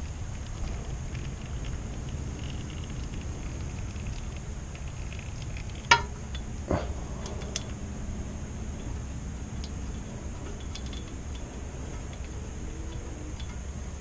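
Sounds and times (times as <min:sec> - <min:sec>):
faint ticks: 0:00.0 - 0:08.0
steady low rumble: 0:00.0 - 0:14.0
ringing metallic clink: 0:05.9 - 0:07.8, 0:08.7 - 0:13.8.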